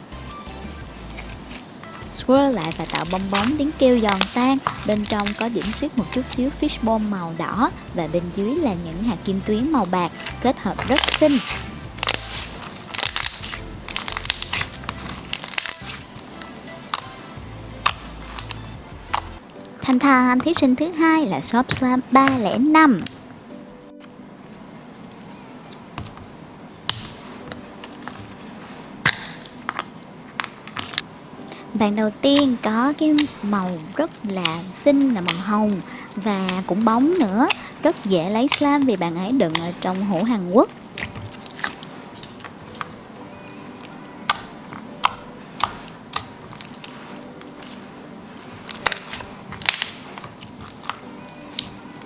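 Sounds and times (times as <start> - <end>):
slime clicking and popping: 0.4 - 20.8, 21.7 - 23.3, 26.8 - 28.4, 29.0 - 52.0
slime squeezed clicking and popping: 1.1 - 6.6, 9.3 - 17.2, 17.8 - 19.4, 43.8 - 51.9.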